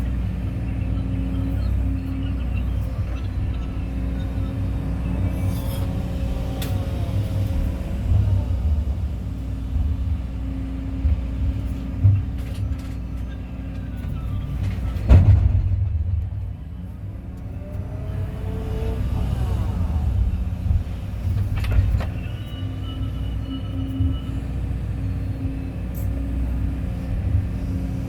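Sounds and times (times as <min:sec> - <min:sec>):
excavator diesel engine: 0:00.0 - 0:28.0
hydraulics whining: 0:00.0 - 0:28.0
excavator bucket clunks: 0:14.0 - 0:16.6.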